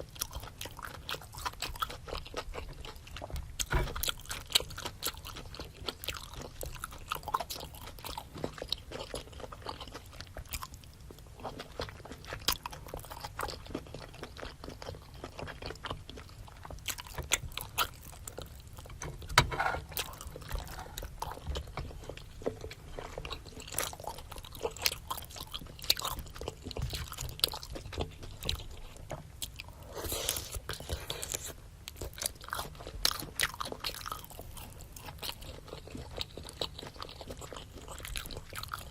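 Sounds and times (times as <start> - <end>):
chewing and crunching food: 0.0 - 38.9.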